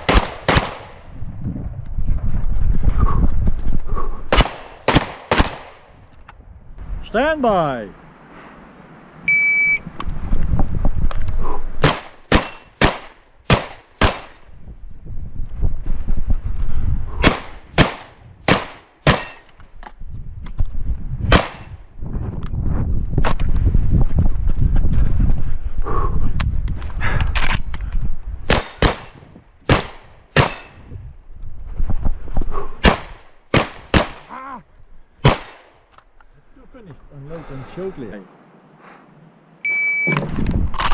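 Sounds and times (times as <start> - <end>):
shotgun shots: 0.0 - 1.1, 4.3 - 6.0, 11.8 - 14.5, 17.2 - 19.5, 21.3 - 21.8, 28.5 - 30.9, 32.8 - 34.4, 35.2 - 35.8
gun handling noise: 28.5 - 30.9.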